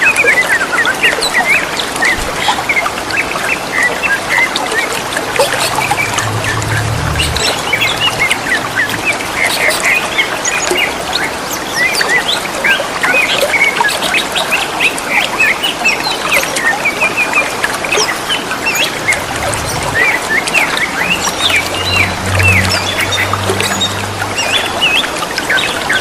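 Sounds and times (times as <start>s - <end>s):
trickling water: 0.0s - 26.0s
birds chirping and whistling: 5.3s - 12.5s.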